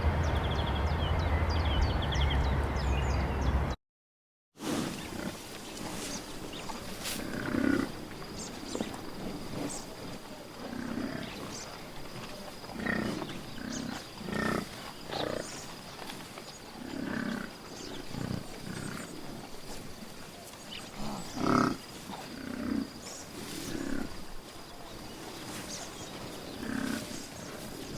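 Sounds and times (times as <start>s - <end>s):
animal low grunting calls: 4.8s - 15.8s, 16.5s - 24.5s, 25.8s - 27.9s.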